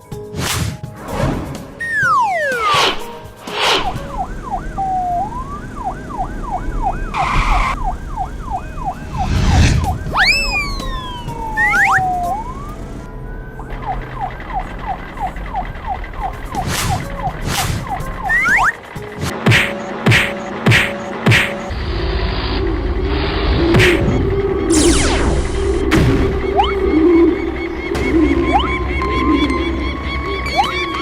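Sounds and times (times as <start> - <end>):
whoosh: 0.4 - 4.9, 8.8 - 12.4
falling whistle glides: 1.8 - 12.8, 13.6 - 18.8, 22.5 - 31.0
warbling cartoon siren: 1.8 - 18.8, 22.5 - 31.0.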